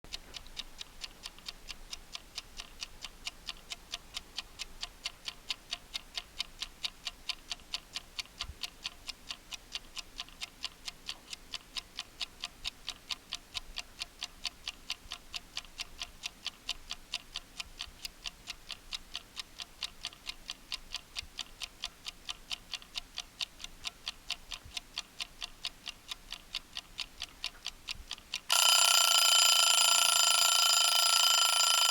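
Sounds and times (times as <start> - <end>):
timer ticking: 0.4 - 31.9
loud ringing alarm: 28.5 - 31.9.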